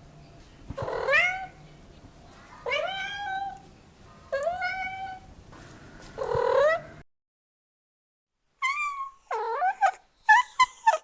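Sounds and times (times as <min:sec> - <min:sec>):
cat meowing: 0:02.6 - 0:03.6, 0:04.4 - 0:05.3, 0:08.6 - 0:10.0.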